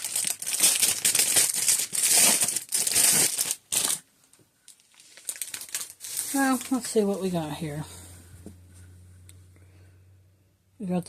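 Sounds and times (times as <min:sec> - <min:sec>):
plastic packaging crinkling: 0:00.0 - 0:07.5.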